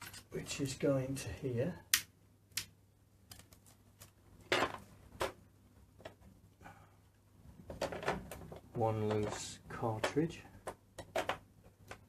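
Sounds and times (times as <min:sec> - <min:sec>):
light clicks and knocks of parts: 0:07.6 - 0:12.0.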